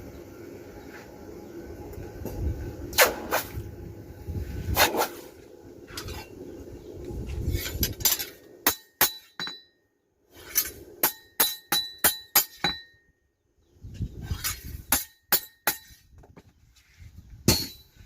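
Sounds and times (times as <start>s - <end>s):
hammer striking steel: 8.0s - 9.8s, 10.6s - 13.1s, 14.9s - 16.0s, 17.5s - 17.9s.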